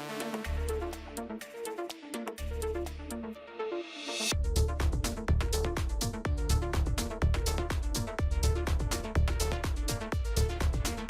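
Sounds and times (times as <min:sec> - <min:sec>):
deep sustained bass: 0:00.4 - 0:01.4, 0:04.3 - 0:11.0.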